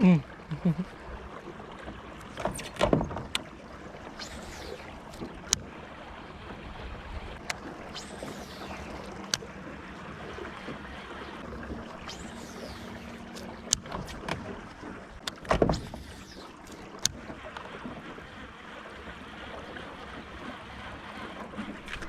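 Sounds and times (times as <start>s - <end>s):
water and air noise: 0.0s - 22.0s
sharp clicks: 12.0s - 14.4s.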